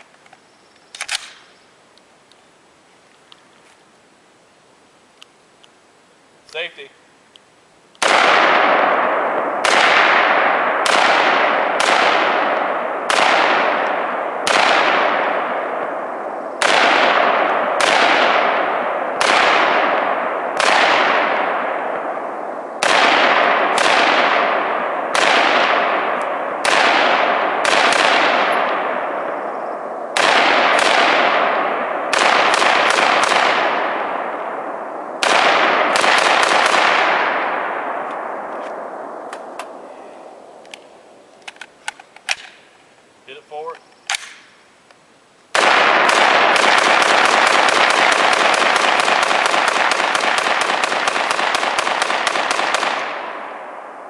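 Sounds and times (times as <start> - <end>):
rifle shots echoing: 8.0 - 40.0, 45.5 - 54.0.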